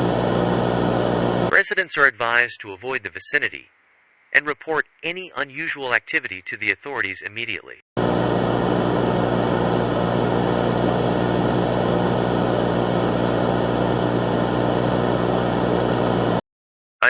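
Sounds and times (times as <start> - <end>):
buzzing drone with static: 0.0 - 1.5, 8.0 - 16.4.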